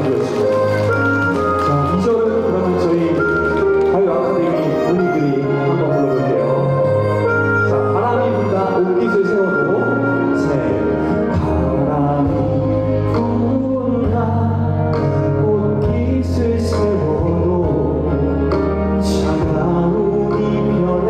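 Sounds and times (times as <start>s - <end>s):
man singing: 0.0s - 21.0s
trot song music: 0.0s - 21.0s.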